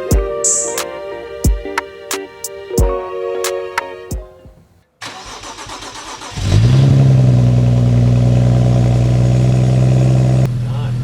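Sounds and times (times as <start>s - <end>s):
music: 0.0s - 4.6s
car engine cranking and idling: 5.0s - 11.0s.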